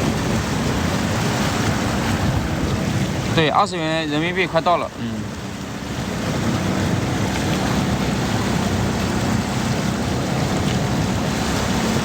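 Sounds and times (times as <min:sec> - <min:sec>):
boat engine hum: 0:00.0 - 0:12.0
rain: 0:00.0 - 0:12.0
rushing water: 0:00.0 - 0:12.0.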